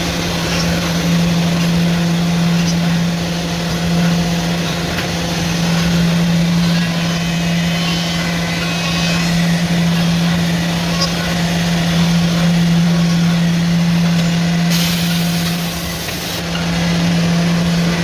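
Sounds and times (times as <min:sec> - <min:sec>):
drilling machine humming: 0:00.0 - 0:18.0
compressed air hiss: 0:14.7 - 0:16.4.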